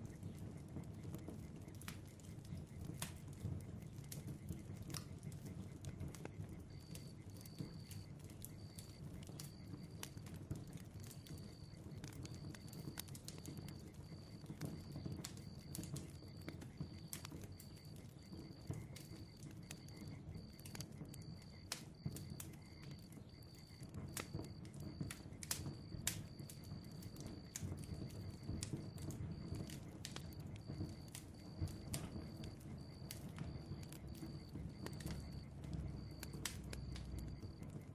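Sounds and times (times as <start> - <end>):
bonfire flames rumbling: 0.0 - 37.9
wood crackling and popping: 0.0 - 37.9.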